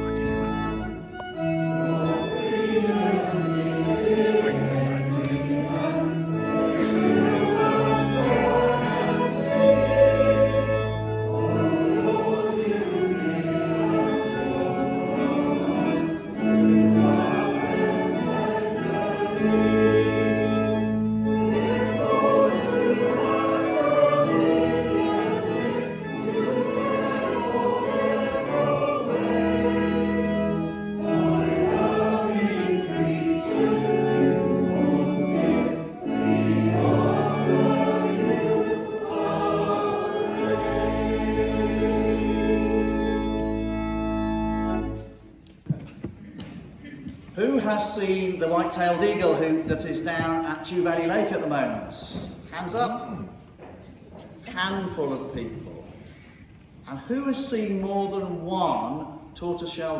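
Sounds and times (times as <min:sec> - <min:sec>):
organ: 0:00.0 - 0:45.3
group singing a hymn: 0:00.3 - 0:45.0.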